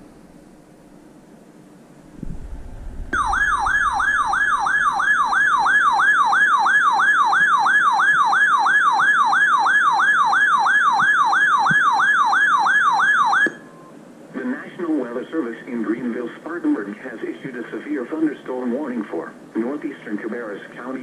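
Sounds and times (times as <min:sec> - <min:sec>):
low thump: 0:02.2 - 0:03.3
siren-like electronic alert tone: 0:03.1 - 0:13.6.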